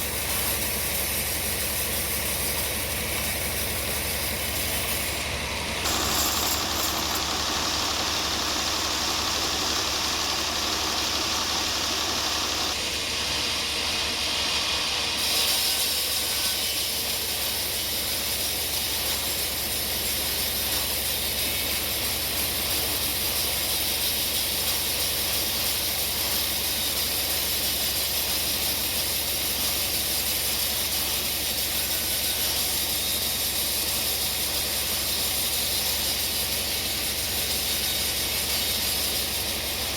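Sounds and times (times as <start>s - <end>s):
saw hissing: 0.0s - 39.9s.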